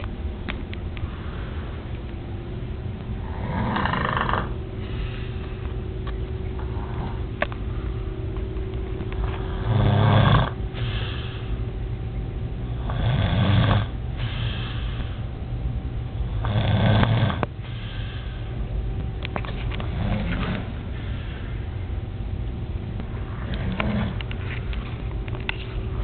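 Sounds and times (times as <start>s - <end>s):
steady low hum: 0.0s - 26.0s
person snoring loudly: 3.2s - 4.6s, 9.4s - 10.6s, 12.8s - 14.6s, 16.3s - 17.4s, 23.3s - 24.2s.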